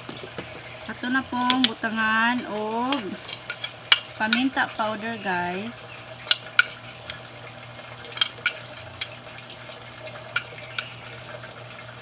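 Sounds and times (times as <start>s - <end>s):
sizzling bubbling liquid in pan: 0.0s - 12.0s.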